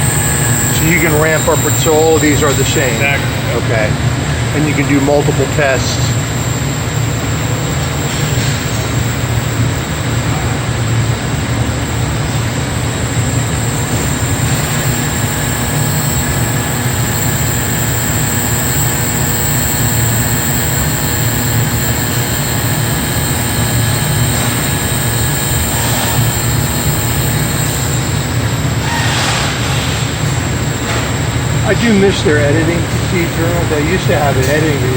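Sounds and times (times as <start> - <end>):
machinery hiss: 0.0 - 10.8, 12.0 - 34.9
machinery hum: 0.0 - 34.9.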